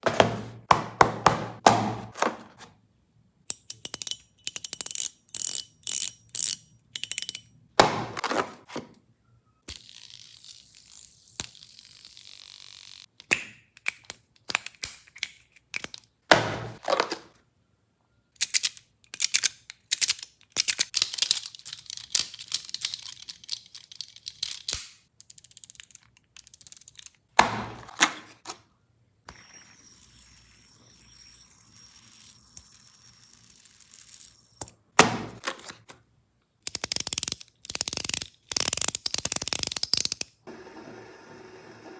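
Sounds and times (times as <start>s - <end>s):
fidget toys clicking and rattling: 3.5s - 7.5s, 9.7s - 16.1s, 18.4s - 27.4s, 36.6s - 40.4s.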